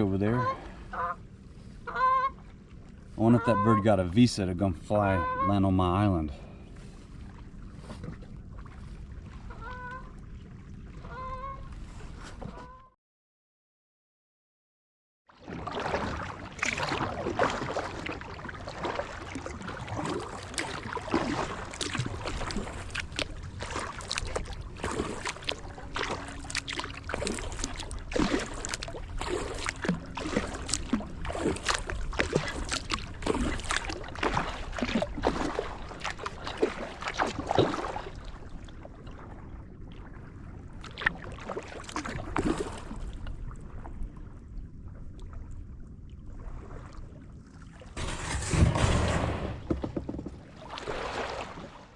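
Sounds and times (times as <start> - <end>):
paddle splashing and dripping: 15.3 - 48.2, 49.6 - 51.9.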